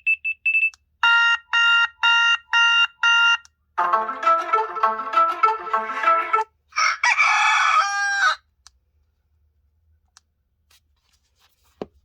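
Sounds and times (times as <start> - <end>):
rooster crow ringtone: 6.8 - 8.4.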